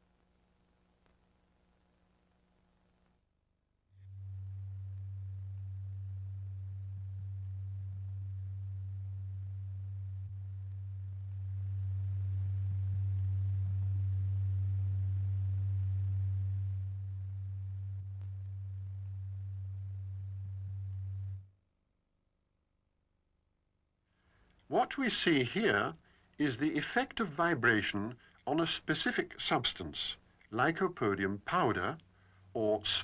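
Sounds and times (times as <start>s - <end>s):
low sine tone: 3.9s - 22.0s.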